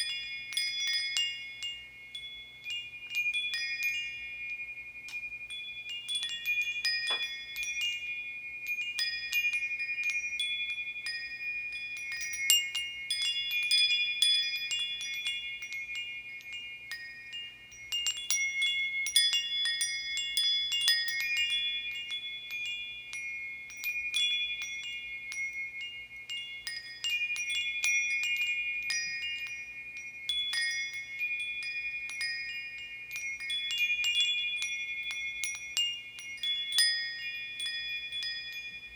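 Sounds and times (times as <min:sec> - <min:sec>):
metal bar chimes tinkling: 0:00.0 - 0:38.9.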